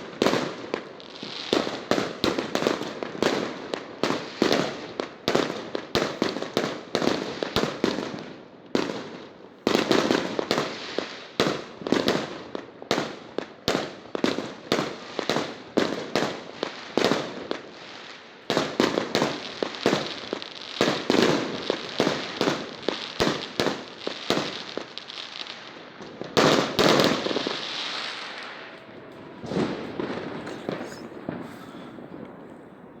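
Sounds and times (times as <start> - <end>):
fireworks banging: 18.5 - 33.0.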